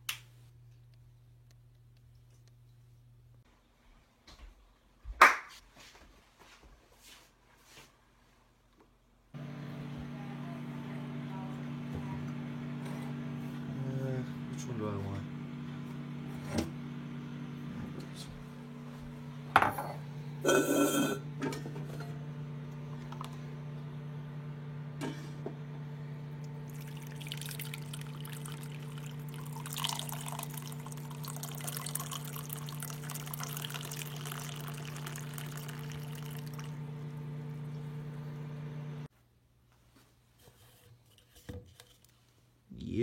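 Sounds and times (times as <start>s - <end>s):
coffee maker humming: 9.4s - 39.1s
coffee streaming into a cup: 26.4s - 39.1s.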